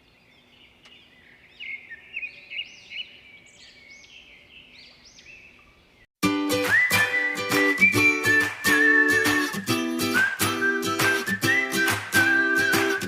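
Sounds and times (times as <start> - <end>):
birds chirping and calling: 0.0 - 6.0.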